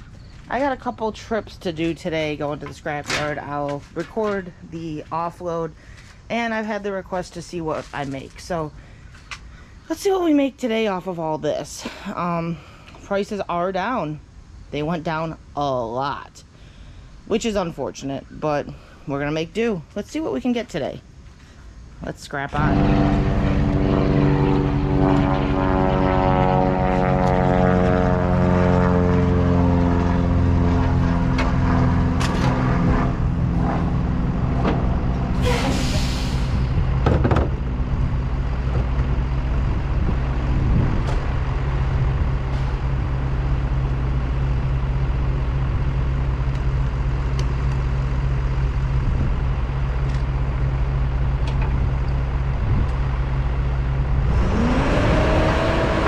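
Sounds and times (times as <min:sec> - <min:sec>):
truck engine running: 0:22.6 - 0:56.0
short loud hiss: 0:35.4 - 0:36.7.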